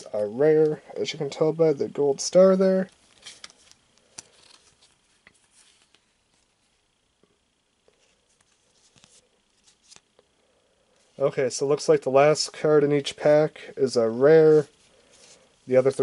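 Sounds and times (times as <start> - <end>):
trading cards clicking and rustling: 2.8 - 6.1.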